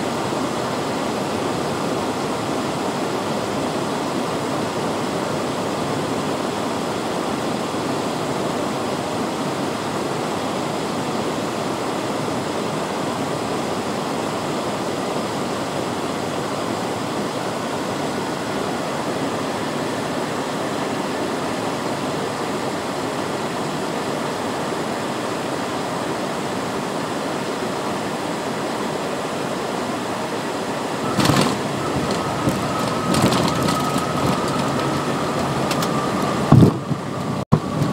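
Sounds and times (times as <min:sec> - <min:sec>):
jet engine and airflow noise: 0:00.0 - 0:37.9
thin steady tone: 0:30.7 - 0:37.4
wheels rolling rumble: 0:31.0 - 0:37.9
wheels touching down thump: 0:31.1 - 0:37.2.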